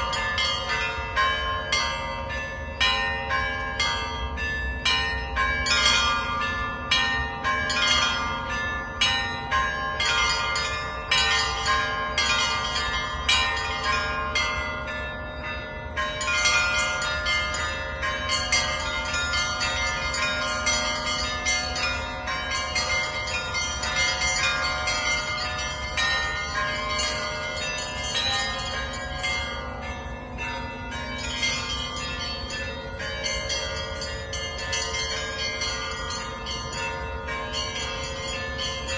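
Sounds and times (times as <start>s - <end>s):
hum of large bells: 0.0s - 38.9s
small church bells striking: 0.0s - 38.9s.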